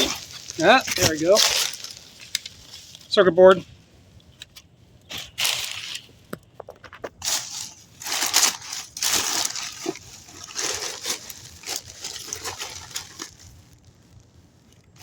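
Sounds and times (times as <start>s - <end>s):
bag rustling and crinkling: 0.0s - 3.2s, 5.1s - 6.3s, 6.9s - 14.3s
items clicking and knocking: 6.3s - 7.4s.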